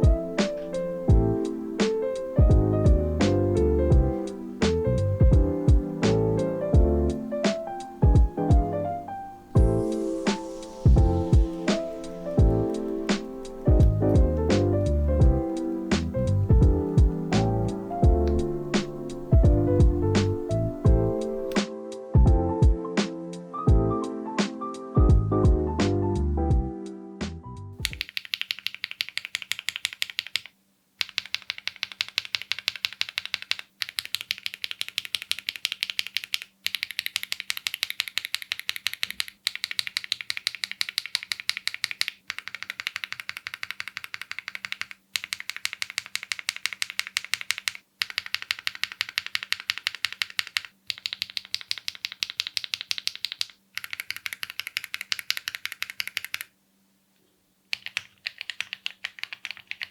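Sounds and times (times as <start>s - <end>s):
mechanical keyboard typing: 10.2s - 21.6s, 27.8s - 56.5s, 57.7s - 59.9s.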